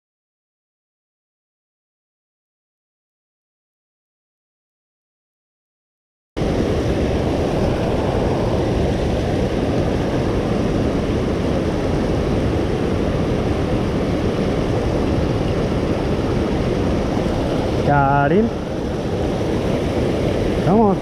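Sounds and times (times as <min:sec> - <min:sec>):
creek water flowing: 0:06.4 - 0:21.0.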